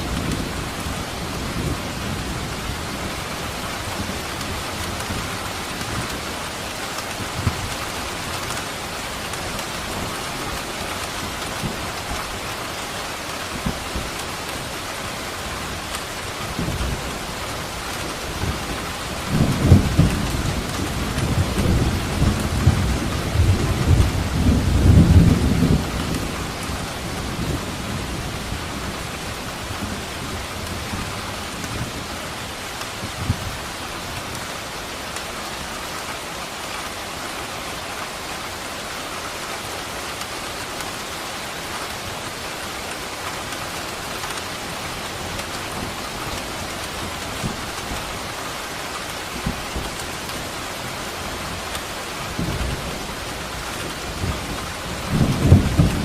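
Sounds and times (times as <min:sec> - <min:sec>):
steady rain: 0:00.0 - 0:56.0
thunder rumbling: 0:15.6 - 0:32.1, 0:49.0 - 0:56.0.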